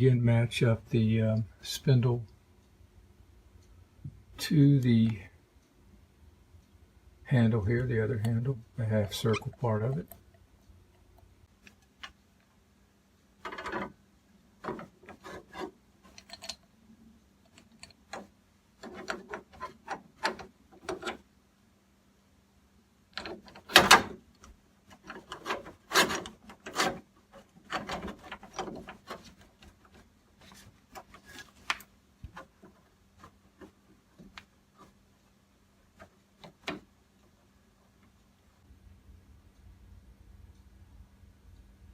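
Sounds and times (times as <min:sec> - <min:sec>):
doorknob clicks and knocks: 0:23.2 - 0:24.2
doorknob scraping: 0:23.2 - 0:24.2, 0:24.9 - 0:31.6.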